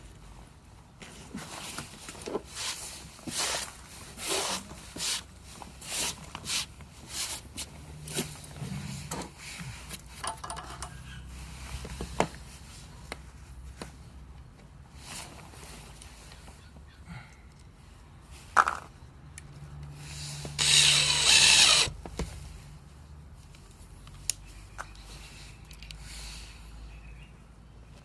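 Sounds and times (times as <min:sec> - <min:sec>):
screws clicking and scraping: 0:10.2 - 0:11.1, 0:20.5 - 0:22.0.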